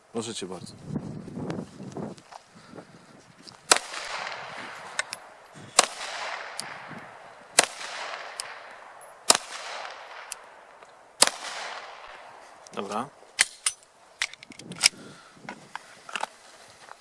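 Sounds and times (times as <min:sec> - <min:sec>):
pistol shots with echo: 0:03.7 - 0:12.4.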